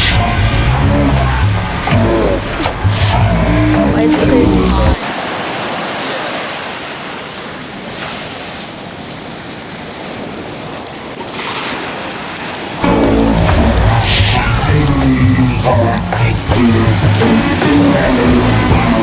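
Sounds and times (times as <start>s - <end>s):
music: 0.0s - 5.0s, 12.8s - 19.0s
ocean surf breaking: 0.0s - 8.7s, 11.1s - 19.0s.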